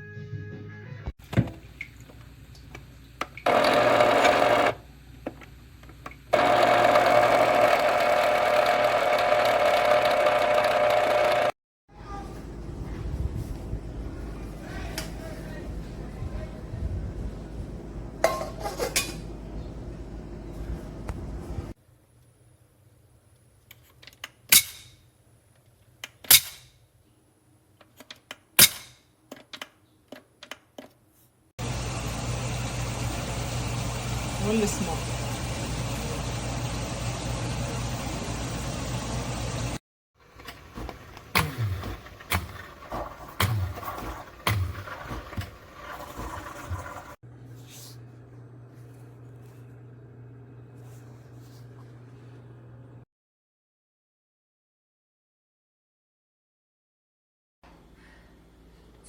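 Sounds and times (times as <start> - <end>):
coffee grinder motor running: 3.5 - 4.8, 6.3 - 11.6.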